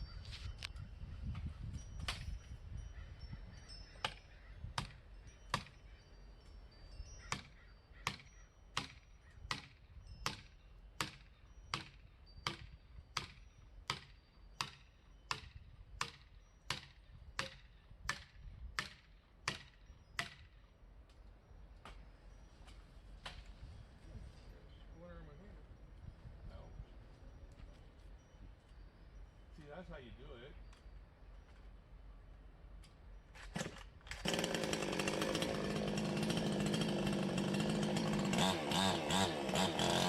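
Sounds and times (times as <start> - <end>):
axe striking wood: 8.1 - 9.7, 11.0 - 20.5.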